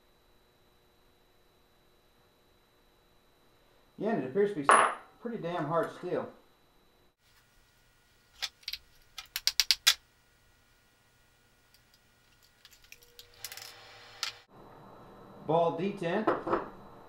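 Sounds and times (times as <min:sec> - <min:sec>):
metal parts clinking: 0:12.3 - 0:14.4.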